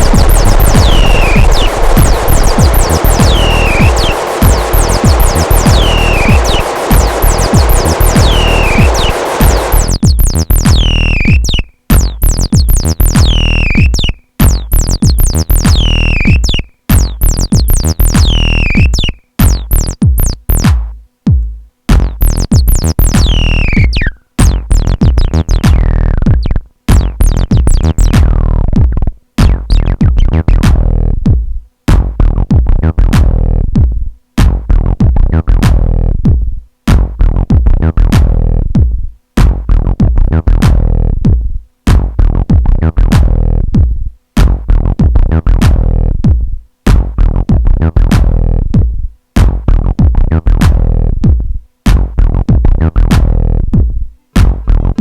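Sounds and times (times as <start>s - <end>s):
high synth sweeping downward: 0.0s - 14.1s, 14.7s - 20.7s, 22.2s - 24.1s
acid synth bassline: 0.0s - 20.9s, 21.9s - 31.2s, 44.4s - 48.8s
drum machine beat: 0.0s - 55.0s.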